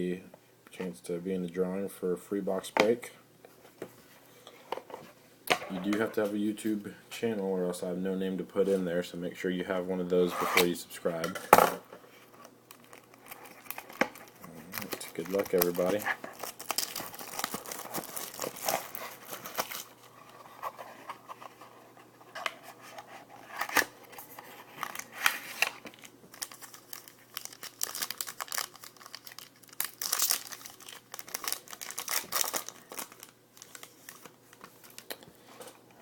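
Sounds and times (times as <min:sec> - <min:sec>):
packaging being torn and crinkled: 0:12.7 - 0:20.4, 0:23.5 - 0:35.2.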